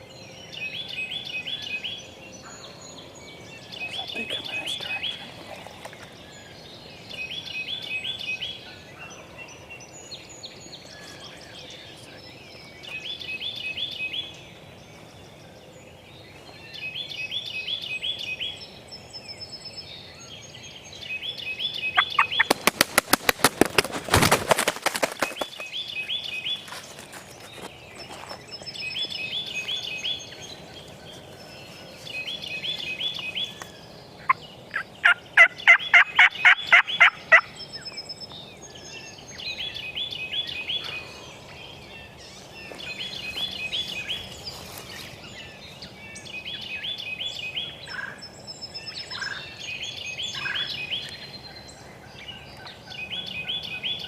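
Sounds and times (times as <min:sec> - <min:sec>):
songbird singing: 0:00.0 - 0:54.0
turkey yelping: 0:34.7 - 0:37.5.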